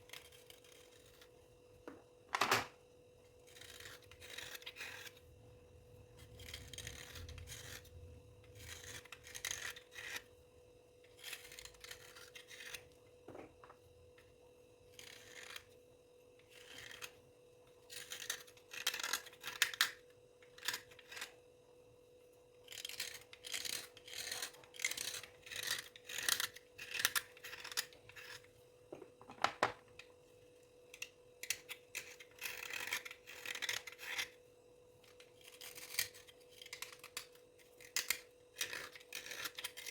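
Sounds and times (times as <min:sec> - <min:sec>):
faint steady hum: 0:00.0 - 0:39.9.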